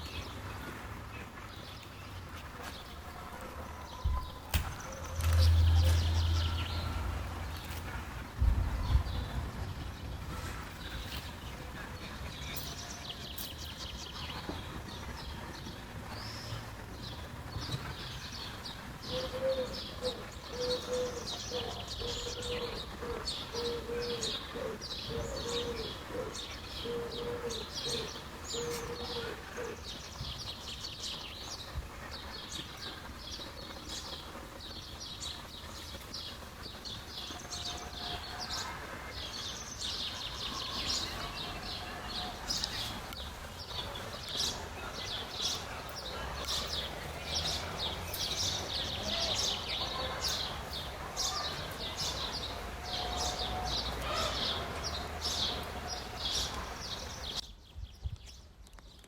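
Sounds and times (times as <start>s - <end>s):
small birds chirping: 0.0s - 59.0s
low repeated bird call: 10.8s - 57.4s.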